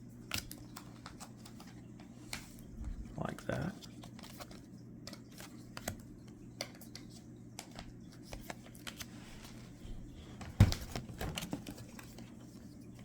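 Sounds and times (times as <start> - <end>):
trading cards being flipped: 3.8 - 9.6.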